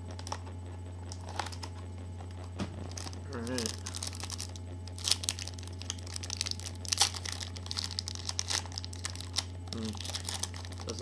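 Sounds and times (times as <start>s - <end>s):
low hum: 0.0s - 11.0s
packaging crinkling: 1.1s - 11.0s
packaging tearing: 2.9s - 11.0s.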